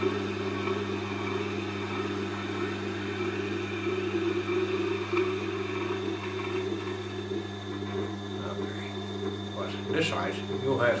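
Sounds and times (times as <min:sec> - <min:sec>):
sharpening machine motor hum: 0:00.0 - 0:11.0.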